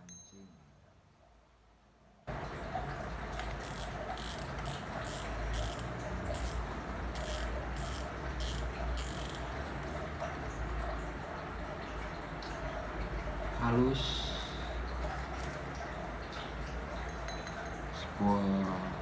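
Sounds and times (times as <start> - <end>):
fishing reel ratchet clicking: 3.5 - 9.5.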